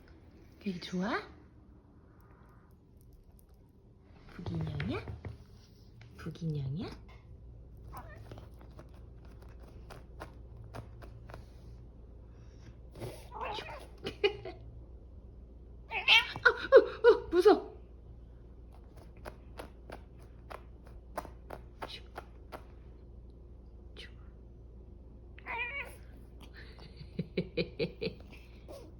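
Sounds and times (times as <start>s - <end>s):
cat meowing: 13.3s - 14.0s, 15.9s - 16.4s, 25.4s - 26.1s.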